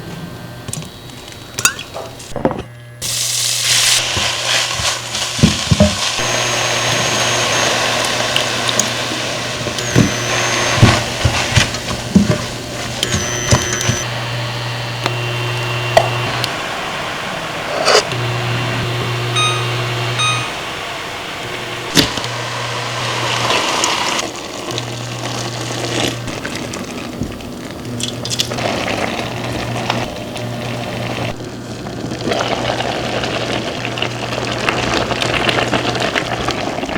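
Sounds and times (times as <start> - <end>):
low electric appliance hum: 0.0 - 36.9
short electronic beeps: 13.0 - 14.0, 19.3 - 20.7.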